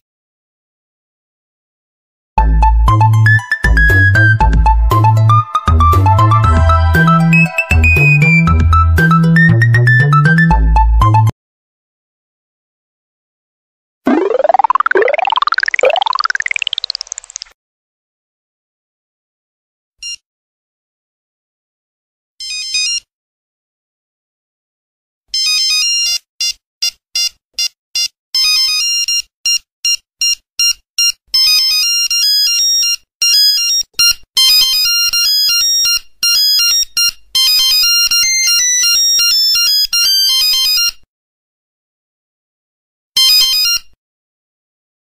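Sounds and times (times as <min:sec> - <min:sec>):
electronic ringtone melody: 0:14.1 - 0:17.4.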